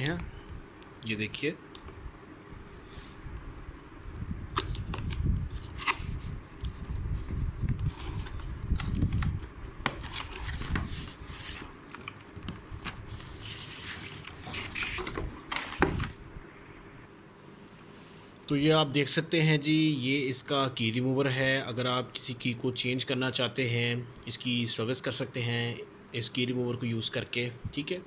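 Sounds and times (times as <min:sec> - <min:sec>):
cardboard and plastic packaging rustling: 0:04.6 - 0:16.2.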